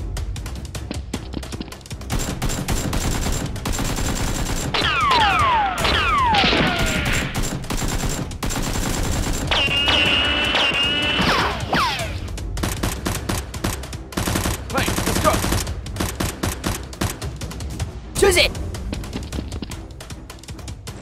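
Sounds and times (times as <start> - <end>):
machine-gun fire: 2.1 - 17.2
falling whistles: 9.6 - 11.6.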